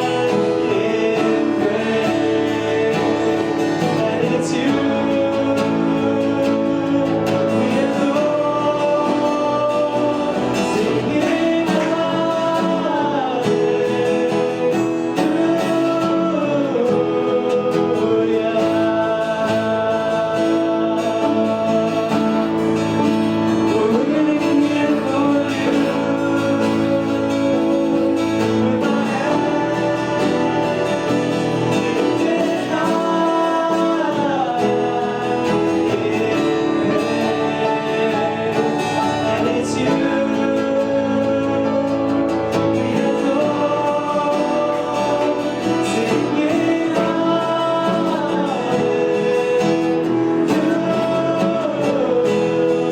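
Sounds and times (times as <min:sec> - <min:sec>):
guitar: 0:00.0 - 0:52.9
held sliding melody line: 0:00.0 - 0:52.9
worship band music: 0:00.0 - 0:52.9.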